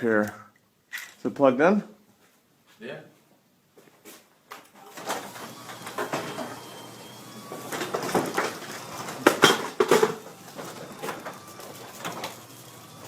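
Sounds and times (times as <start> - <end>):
garage door opener motor hum: 4.8 - 13.0.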